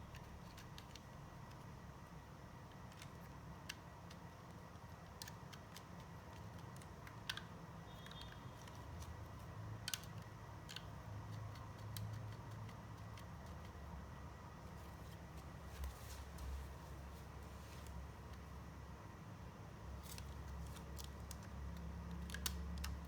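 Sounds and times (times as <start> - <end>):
low steady hum: 0.0 - 23.0
plastic pieces clicking: 20.1 - 23.0.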